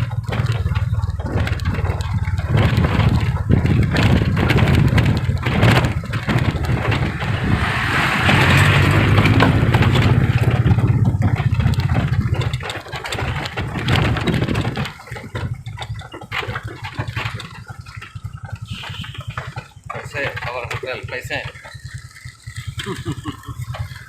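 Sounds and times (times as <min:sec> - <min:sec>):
road noise: 0:00.0 - 0:16.6
vehicle engine rumbling: 0:00.0 - 0:24.0.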